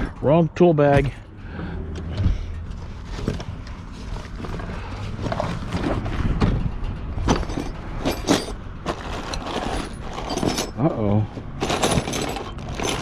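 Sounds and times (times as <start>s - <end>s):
low engine hum: 0.0s - 13.0s
hand tools clinking in a bag: 7.3s - 13.0s.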